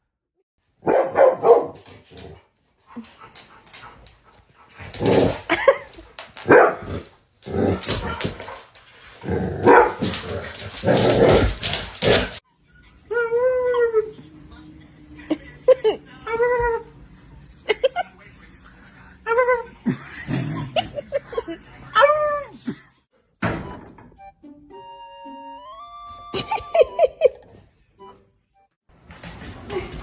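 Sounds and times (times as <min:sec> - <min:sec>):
dog barking: 0:00.8 - 0:01.9, 0:06.4 - 0:07.0, 0:09.6 - 0:10.1.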